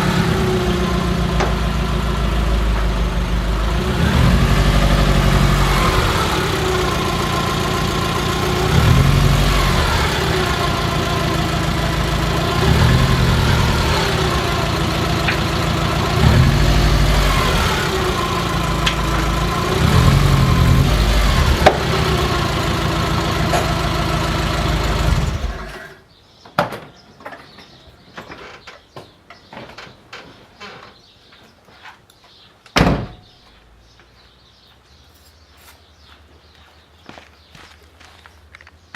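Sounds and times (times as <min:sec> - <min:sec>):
car engine running: 0:00.0 - 0:25.9.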